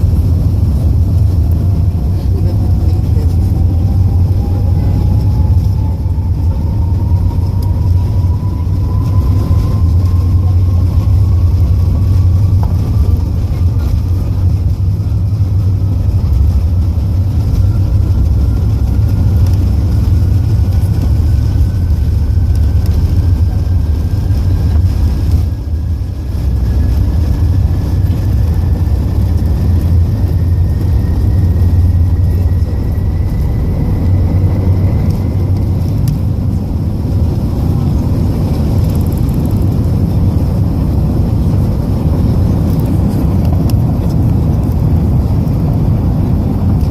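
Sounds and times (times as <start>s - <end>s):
jet engine whine: 0.0s - 46.9s
jet engines deep rumble: 0.0s - 46.9s.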